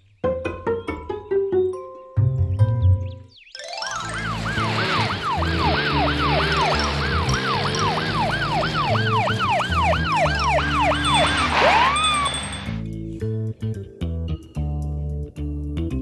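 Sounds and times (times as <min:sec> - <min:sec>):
background music: 0:00.0 - 0:15.3
ambulance siren wailing: 0:03.8 - 0:12.8.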